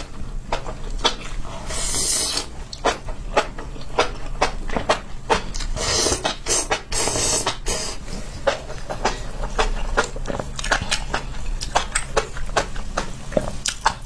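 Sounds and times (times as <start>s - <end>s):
close chewing with wet mouth clicks: 2.1s - 7.6s, 8.4s - 14.0s.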